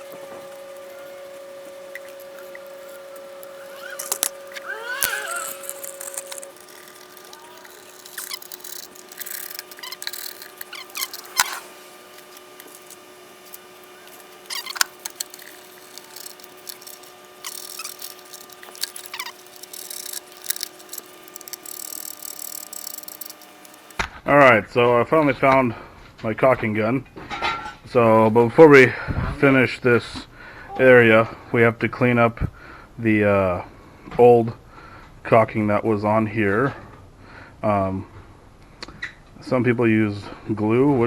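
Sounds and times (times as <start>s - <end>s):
objects being handled: 0.0s - 24.0s
faint steady hum: 0.0s - 24.1s.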